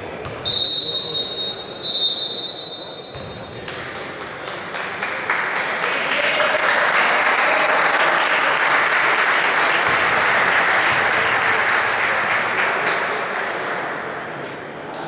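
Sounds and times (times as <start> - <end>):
spectators applauding: 4.4 - 13.9.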